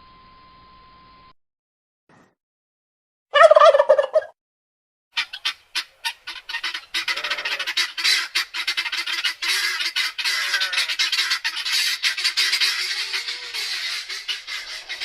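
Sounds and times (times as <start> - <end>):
birds squawking: 5.2 - 15.0
low honking calls: 5.2 - 15.0.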